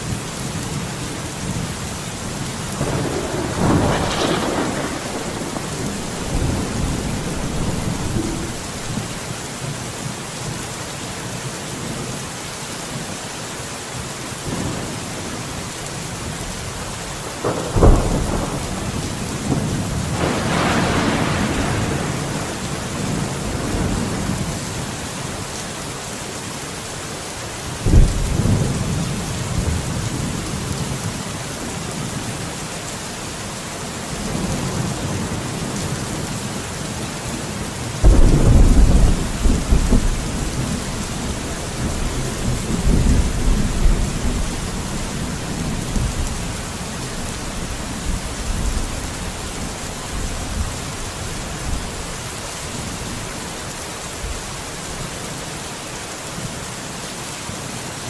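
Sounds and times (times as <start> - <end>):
steady rain: 0.0 - 58.0
rolling thunder: 2.7 - 9.2, 17.2 - 24.8, 27.8 - 31.2, 38.0 - 52.0
sharp thunder crack: 2.8 - 9.1, 17.4 - 22.6, 38.0 - 44.5.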